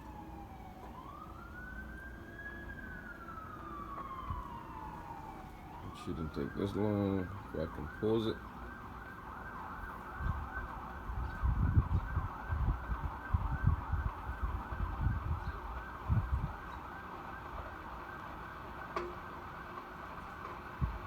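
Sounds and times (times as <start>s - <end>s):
warbling electronic siren tone: 9.1s - 19.6s.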